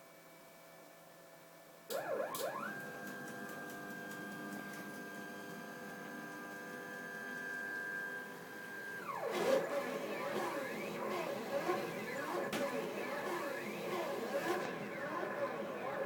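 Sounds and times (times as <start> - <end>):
stepper motor whine: 5.0 - 16.0.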